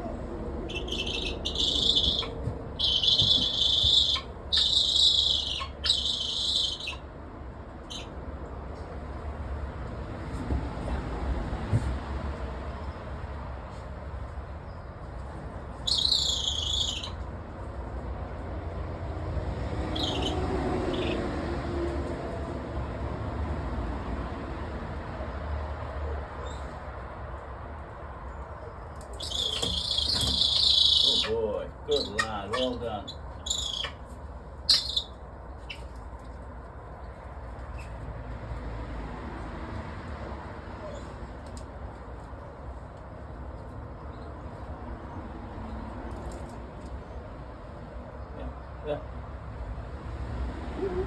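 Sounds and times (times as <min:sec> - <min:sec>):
eagle screeching call: 0:00.7 - 0:07.0, 0:15.9 - 0:17.2, 0:19.9 - 0:20.4, 0:29.2 - 0:34.0, 0:34.7 - 0:35.1.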